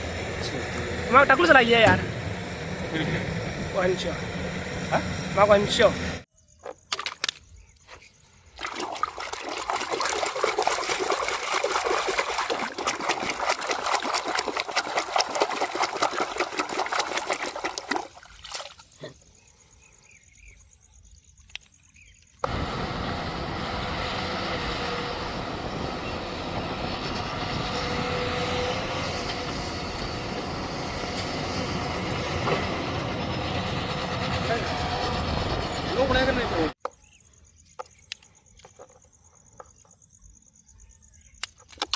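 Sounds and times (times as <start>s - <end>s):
water running and splashing: 8.6s - 19.0s.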